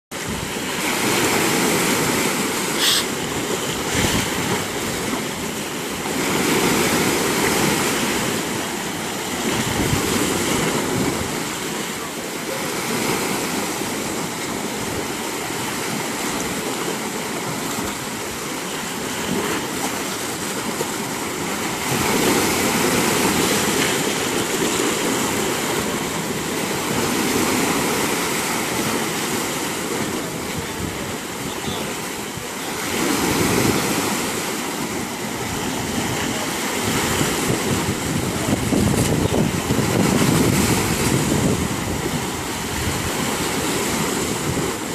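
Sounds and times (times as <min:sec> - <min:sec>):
sea waves breaking ashore: 0:00.1 - 0:44.9.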